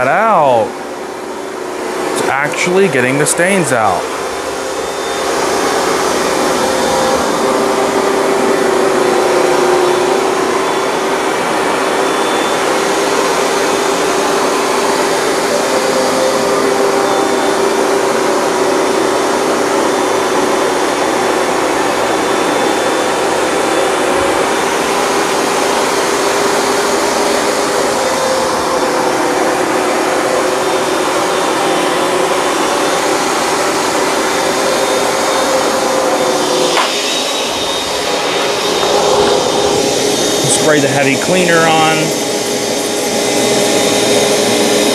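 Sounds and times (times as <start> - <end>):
carpet cleaner suction motor: 0.0 - 2.4, 3.4 - 44.9.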